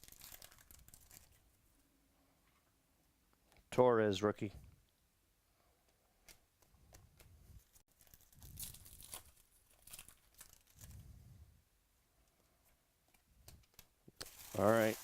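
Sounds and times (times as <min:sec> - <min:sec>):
wrappers tearing and crinkling: 0:00.0 - 0:01.4, 0:07.9 - 0:11.0, 0:14.2 - 0:15.0.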